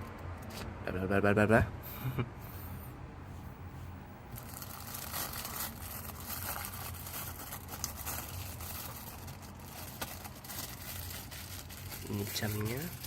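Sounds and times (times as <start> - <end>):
paper and plastic rustling: 4.4 - 13.0.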